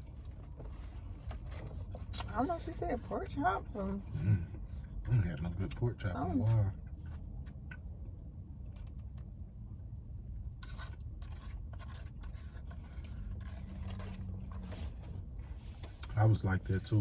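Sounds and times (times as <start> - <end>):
chewing and crunching food: 0.0 - 2.7, 4.0 - 17.0.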